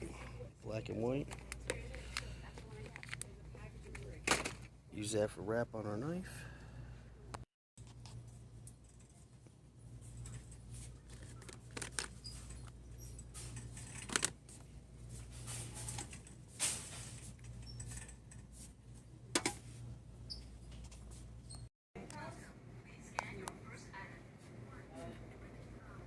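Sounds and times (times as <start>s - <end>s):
clicks and rustles of handling: 1.1s - 4.7s, 7.8s - 18.8s.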